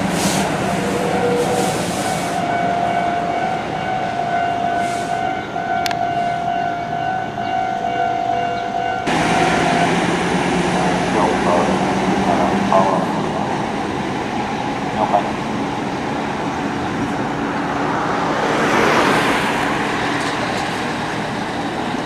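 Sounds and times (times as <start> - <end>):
heavy truck passing: 0.0 - 6.5, 9.1 - 22.0
level crossing alarm ringing: 0.0 - 11.7.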